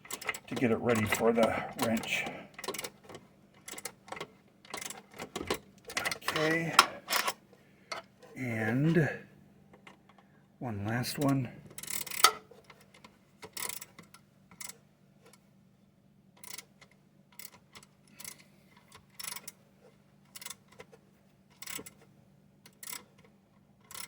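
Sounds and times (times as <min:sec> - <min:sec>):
wrench clicking: 0:16.4 - 0:16.7, 0:17.4 - 0:18.4, 0:19.2 - 0:19.6, 0:20.3 - 0:20.6, 0:22.7 - 0:23.1.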